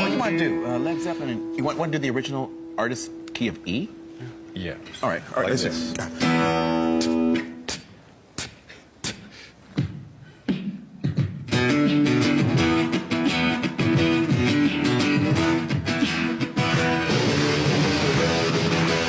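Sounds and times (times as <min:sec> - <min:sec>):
rock guitar riff: 0:00.0 - 0:07.8, 0:11.5 - 0:19.0
drum hits: 0:09.8 - 0:19.0.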